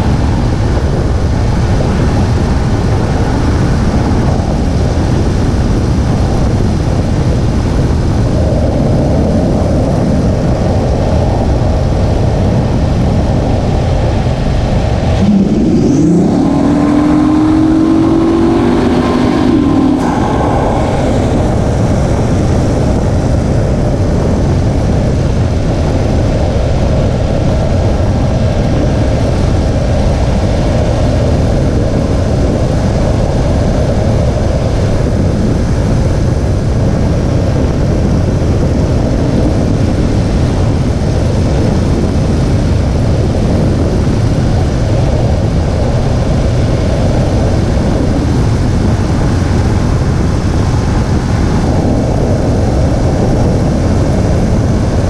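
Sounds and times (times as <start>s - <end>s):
car engine rumble: 0.0s - 55.0s
road and wind noise: 0.0s - 55.0s.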